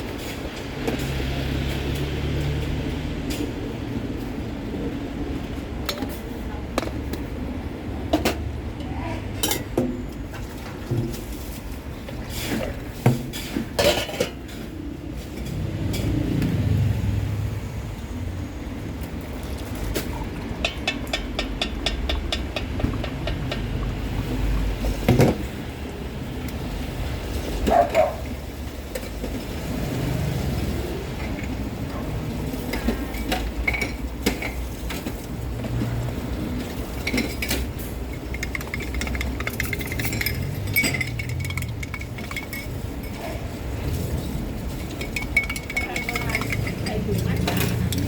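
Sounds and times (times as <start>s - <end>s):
utensils and cups clinking: 19.5s - 25.5s, 31.1s - 48.0s.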